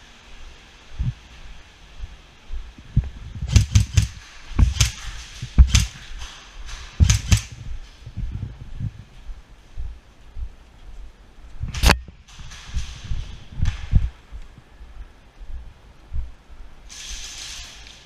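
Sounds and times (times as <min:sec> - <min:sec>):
low thuds: 0:02.5 - 0:16.8
airsoft gun shots: 0:03.5 - 0:07.6.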